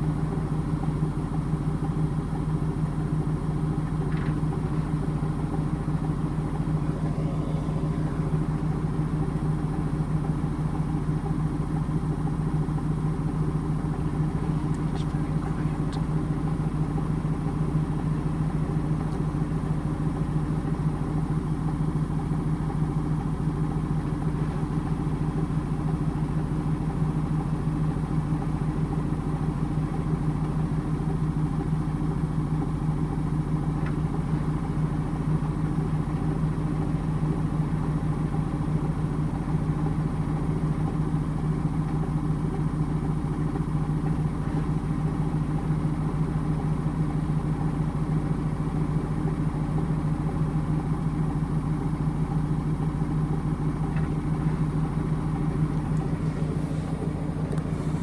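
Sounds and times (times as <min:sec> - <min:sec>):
washing machine spinning: 0:06.6 - 0:09.5, 0:54.9 - 0:58.0.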